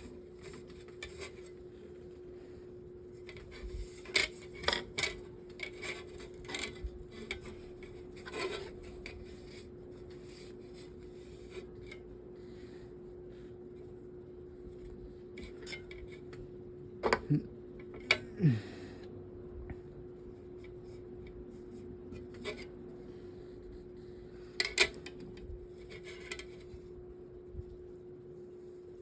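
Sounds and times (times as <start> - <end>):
cloth wiping metal fan blade: 0.0 - 16.6
faint steady hum: 0.0 - 29.0.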